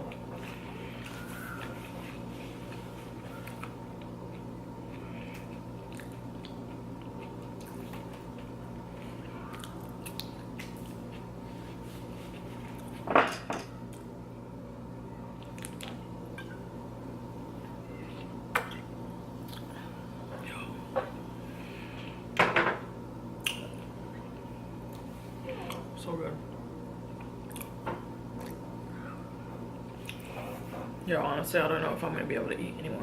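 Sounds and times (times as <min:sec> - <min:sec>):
crunching and chewing food: 0:00.0 - 0:13.0, 0:15.4 - 0:16.6, 0:17.6 - 0:19.8, 0:27.1 - 0:28.7
low electrical hum: 0:00.0 - 0:33.0.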